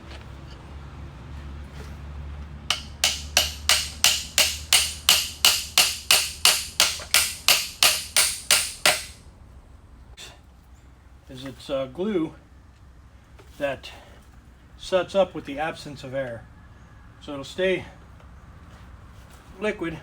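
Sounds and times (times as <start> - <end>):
sharp even taps: 2.7 - 9.2.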